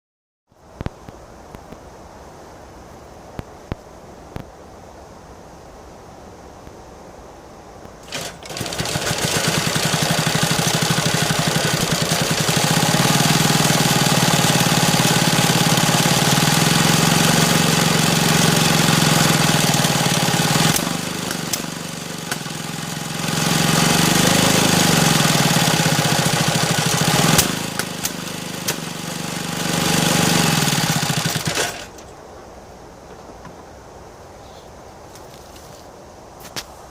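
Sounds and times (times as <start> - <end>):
motorcycle engine misfiring: 8.0 - 16.4.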